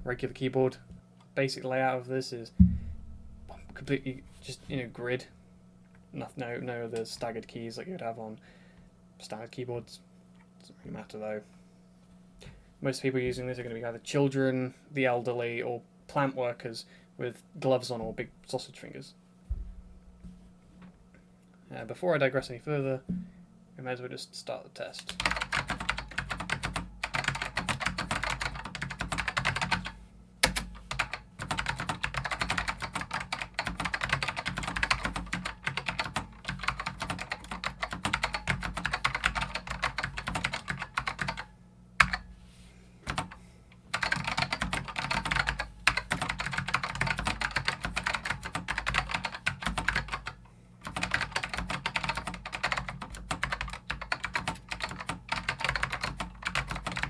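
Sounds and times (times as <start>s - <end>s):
fast keyboard typing: 25.1s - 42.2s, 43.1s - 57.0s.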